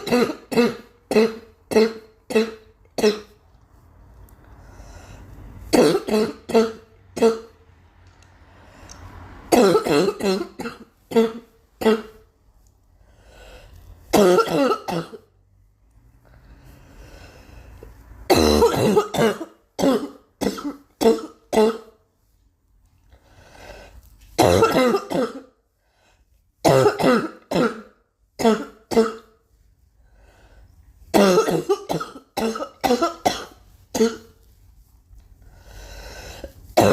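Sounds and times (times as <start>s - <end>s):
girl coughing: 0.0s - 3.4s, 5.7s - 7.6s, 9.5s - 12.2s, 14.1s - 15.3s, 18.3s - 21.9s, 24.4s - 25.5s, 26.6s - 29.3s, 31.2s - 34.4s.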